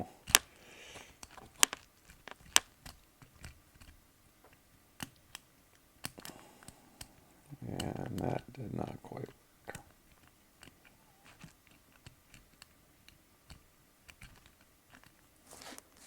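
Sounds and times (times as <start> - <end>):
lock pick metallic clicks: 1.1 - 7.2.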